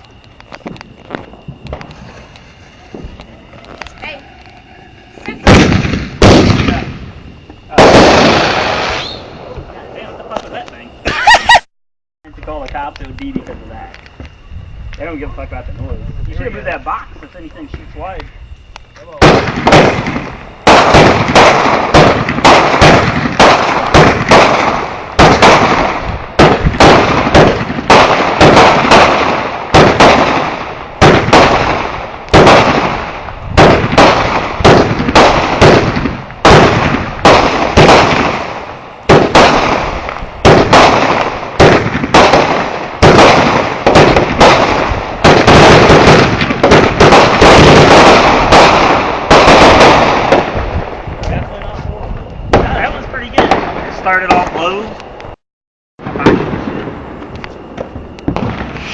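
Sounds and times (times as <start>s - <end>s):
crackle of firework bursts: 0.0s - 11.7s, 12.3s - 15.4s, 16.2s - 55.4s, 56.0s - 58.9s
firework bangs with echo: 5.3s - 11.4s, 17.6s - 54.9s, 56.0s - 58.9s.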